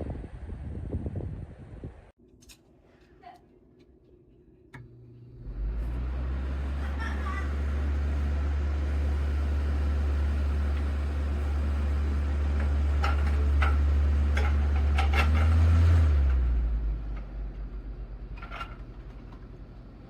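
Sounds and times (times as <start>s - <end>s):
fan airflow rumbling: 0.0s - 20.0s.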